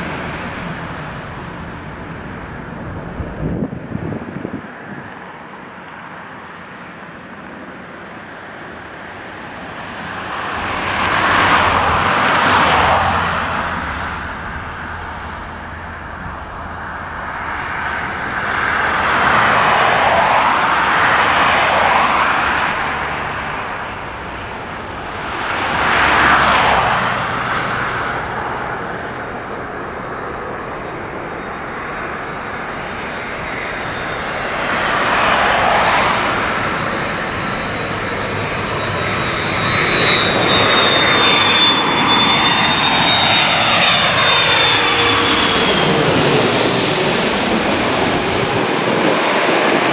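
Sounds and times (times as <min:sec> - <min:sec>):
vehicles passing: 0:00.0 - 0:04.6, 0:06.6 - 0:49.9
steady low hum: 0:13.4 - 0:19.3.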